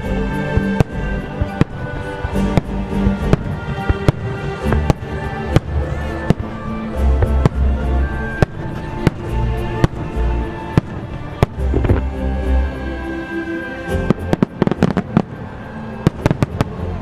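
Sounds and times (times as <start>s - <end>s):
fireworks bangs: 0.0s - 12.2s
deep rumbling echoes: 0.0s - 17.0s
music: 0.0s - 17.0s.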